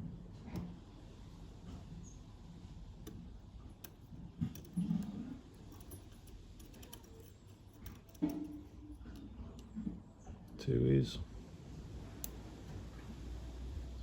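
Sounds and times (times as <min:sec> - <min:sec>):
lock pick clicking in lock: 0:03.0 - 0:09.7.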